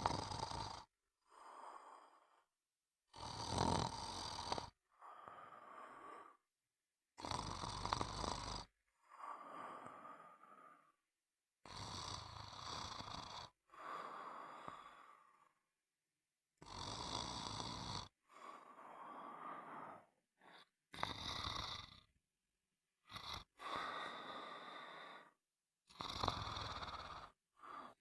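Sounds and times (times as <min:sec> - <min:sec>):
person snoring: 0:00.0 - 0:02.5, 0:03.1 - 0:06.4, 0:07.2 - 0:11.0, 0:11.6 - 0:15.6, 0:16.6 - 0:22.2, 0:23.0 - 0:28.0
quiet breathing: 0:01.2 - 0:02.6, 0:04.9 - 0:06.5, 0:09.0 - 0:11.0, 0:13.7 - 0:15.7, 0:18.1 - 0:20.8, 0:23.2 - 0:25.4, 0:26.6 - 0:28.0.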